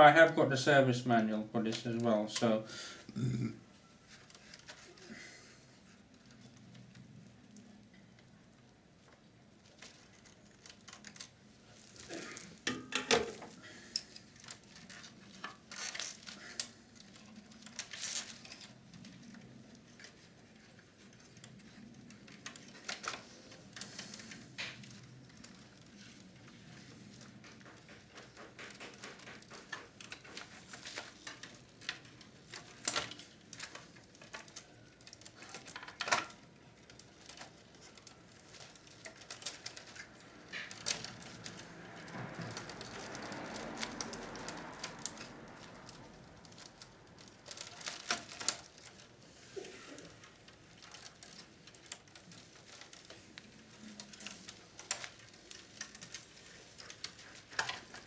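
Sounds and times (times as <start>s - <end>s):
soft continuous noise: 0.0s - 58.0s
tools and parts clicking: 12.6s - 13.6s.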